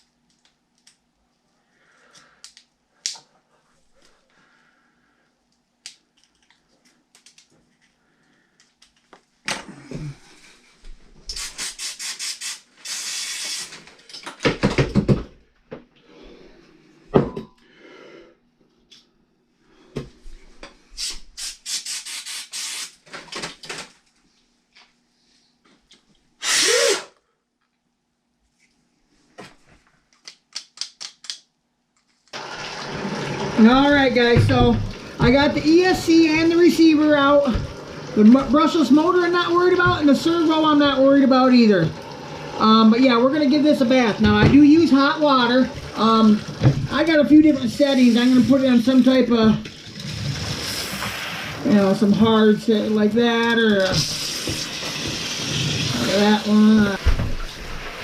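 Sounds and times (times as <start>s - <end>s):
tools and parts clicking: 30.1s - 32.3s
heavy thumps: 33.6s - 38.8s.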